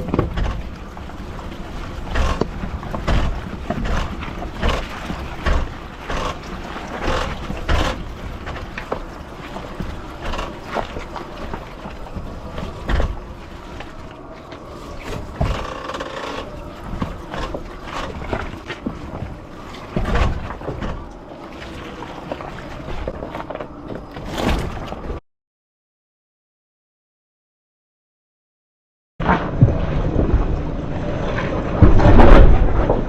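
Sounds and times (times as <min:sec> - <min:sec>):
suspension knocks and clunks: 0:00.0 - 0:01.1, 0:02.0 - 0:13.3, 0:15.2 - 0:21.2.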